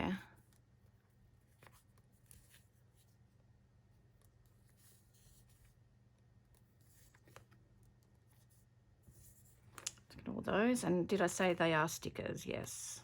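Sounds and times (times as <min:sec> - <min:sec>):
faint room hum: 0:00.0 - 0:13.0.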